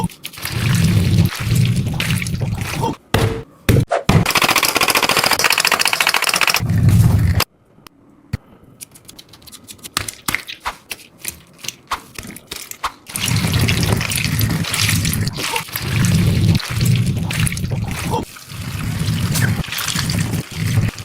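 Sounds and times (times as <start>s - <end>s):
scattered clicks and crackles: 4.5s - 7.5s.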